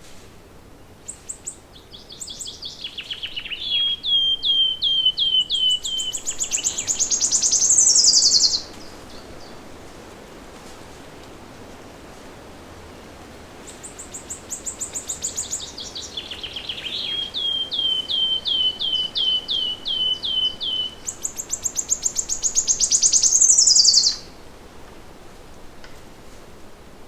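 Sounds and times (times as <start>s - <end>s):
soft background hiss: 0.0s - 27.0s
songbird singing: 0.8s - 9.8s, 13.6s - 24.5s.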